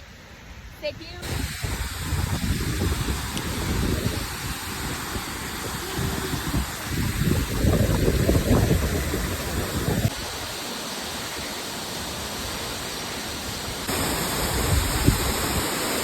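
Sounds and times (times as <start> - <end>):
wind buffeting microphone: 0.9 - 10.4, 13.8 - 16.0
waterfall rushing: 1.2 - 16.0.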